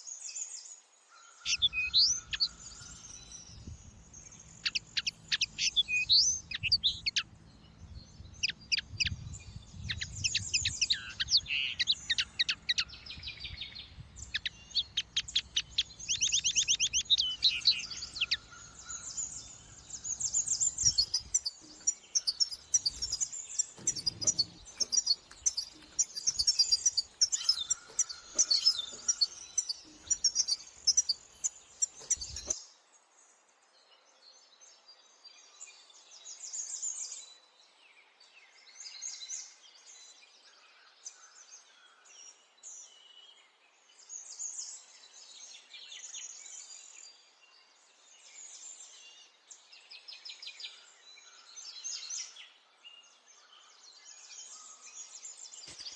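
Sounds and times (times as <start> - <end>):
finches singing and twittering: 1.5 - 32.6.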